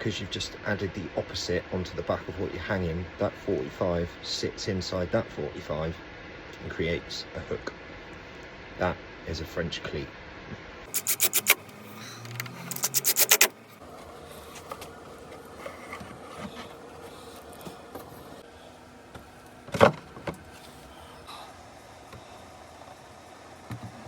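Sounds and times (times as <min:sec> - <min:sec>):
faint workshop noise: 0:00.0 - 0:24.0
rapid sharp clicks: 0:12.4 - 0:13.5.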